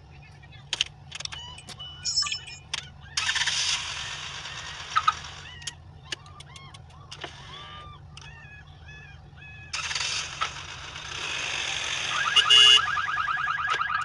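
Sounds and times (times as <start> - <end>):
sharp clicks: 0.7 - 7.4
short chirping tones: 1.4 - 2.7.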